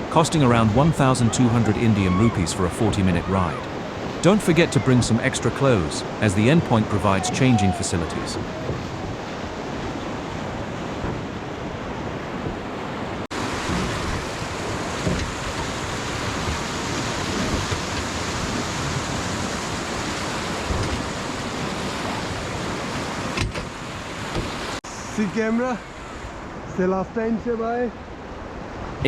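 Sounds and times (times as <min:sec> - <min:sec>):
river rapids rushing: 0:00.0 - 0:10.9, 0:12.9 - 0:26.7
wind buffeting microphone: 0:07.1 - 0:24.8.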